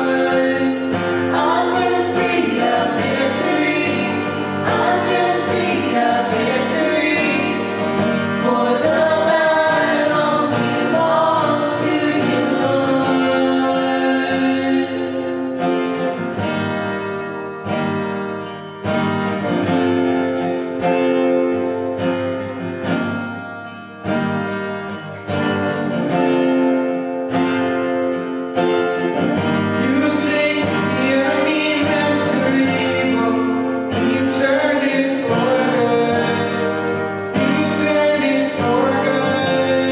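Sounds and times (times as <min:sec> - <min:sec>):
group of voices singing: 0:00.0 - 0:16.3, 0:28.9 - 0:39.9
guitar: 0:00.0 - 0:39.9.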